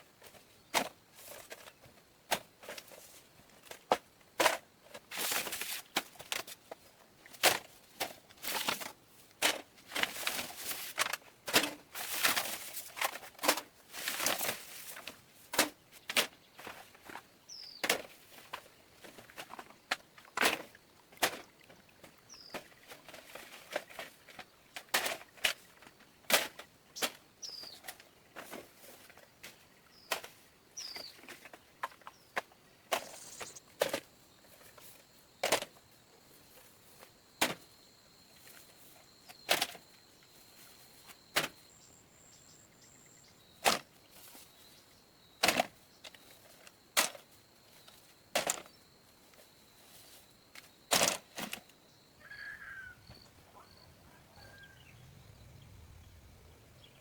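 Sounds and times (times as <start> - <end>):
faint chirps: 32.9 - 33.8, 51.8 - 57.0.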